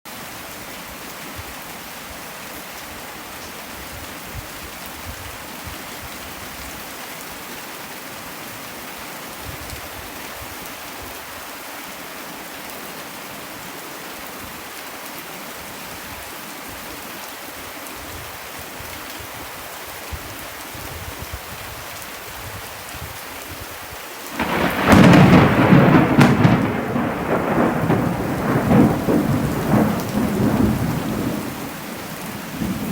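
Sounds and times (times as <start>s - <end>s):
steady rain falling: 0.1s - 32.9s
thunderclap rumbling: 24.4s - 32.9s.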